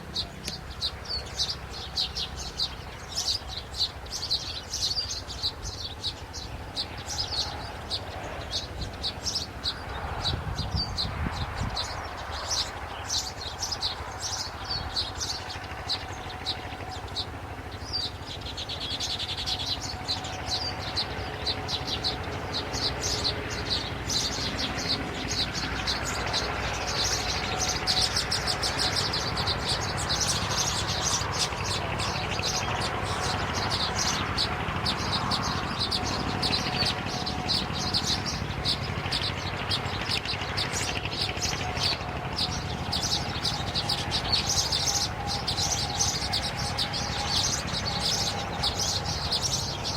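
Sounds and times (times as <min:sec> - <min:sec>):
birds chirping: 0:00.0 - 0:49.9.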